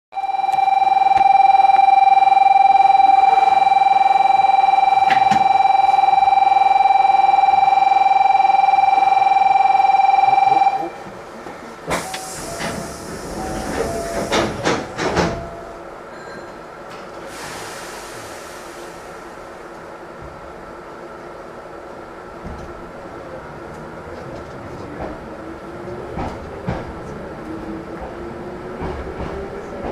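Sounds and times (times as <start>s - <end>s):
station departure bell ringing: 0.2s - 11.1s, 11.9s - 16.7s
train doors closing with air hiss: 11.3s - 19.7s.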